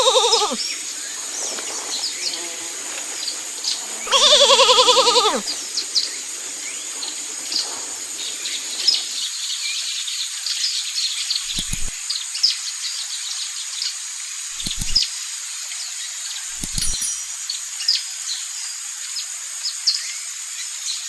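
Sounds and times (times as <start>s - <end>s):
high hiss: 0.0s - 9.8s, 11.4s - 12.0s, 14.2s - 15.7s
small birds chirping: 0.0s - 9.8s, 11.3s - 12.0s, 14.6s - 15.1s.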